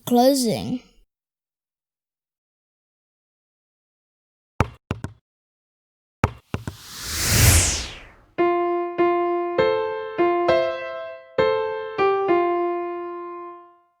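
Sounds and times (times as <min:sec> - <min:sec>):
whoosh falling in pitch: 0:06.8 - 0:08.1.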